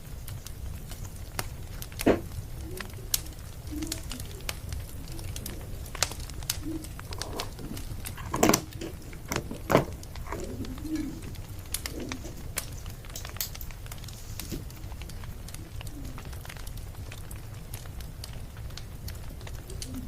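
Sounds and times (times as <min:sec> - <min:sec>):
fire pops: 0:00.0 - 0:20.0
wood fire crackling: 0:00.0 - 0:20.0
dove cooing: 0:02.0 - 0:13.1, 0:14.7 - 0:16.6, 0:19.4 - 0:20.0.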